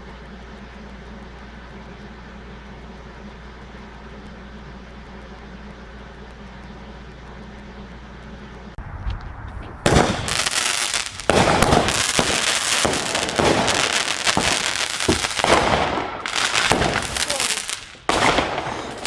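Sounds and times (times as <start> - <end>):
low steady hum: 0.0 - 19.0
fireworks bangs and crackling: 9.3 - 19.0.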